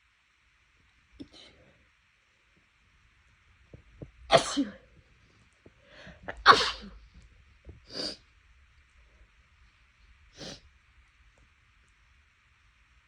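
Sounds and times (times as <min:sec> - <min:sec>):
person sneezing: 0:04.3 - 0:04.8, 0:06.2 - 0:07.0, 0:07.9 - 0:08.2, 0:10.4 - 0:10.6
soft breathy sounds: 0:05.2 - 0:06.4.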